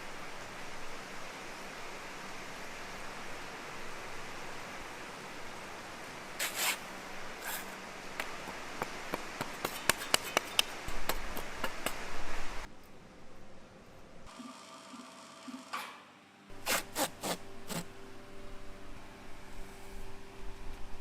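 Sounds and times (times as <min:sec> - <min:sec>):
steady hiss: 0:00.0 - 0:13.7
light sharp taps and clicks: 0:08.2 - 0:12.0.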